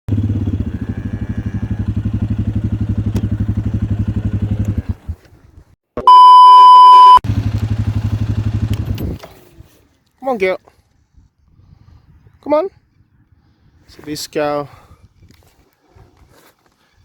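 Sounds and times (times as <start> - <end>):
electronic beep: 6.0 - 7.2
small engine puttering: 7.3 - 9.9.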